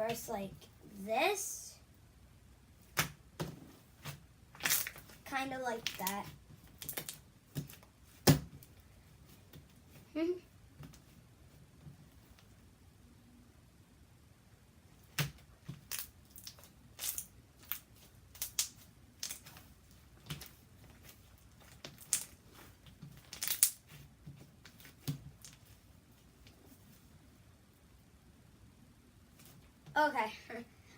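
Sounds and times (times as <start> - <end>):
slime popping and crackling: 4.0 - 8.4, 15.0 - 25.7.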